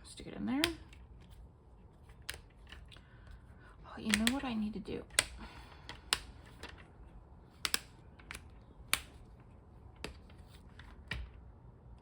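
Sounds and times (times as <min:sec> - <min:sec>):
planner pages clicking: 0:04.1 - 0:04.4.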